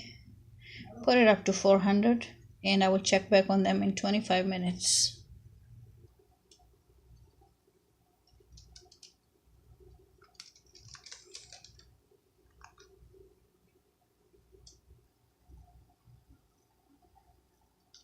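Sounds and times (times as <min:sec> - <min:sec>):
faint clicks and ticks: 0:06.0 - 0:07.6, 0:08.2 - 0:13.0, 0:14.5 - 0:14.9, 0:17.8 - 0:18.0.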